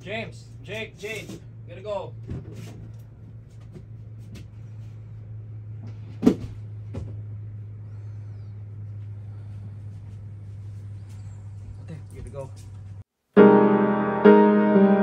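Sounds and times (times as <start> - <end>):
steady low hum: 0.0 - 13.1.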